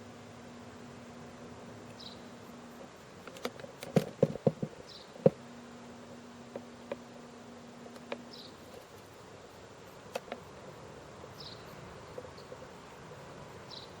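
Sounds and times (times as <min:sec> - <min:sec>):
faint insect buzzing: 0:00.0 - 0:14.0
low steady hum: 0:00.0 - 0:14.0
sharp clicks: 0:03.2 - 0:04.4, 0:10.1 - 0:10.5.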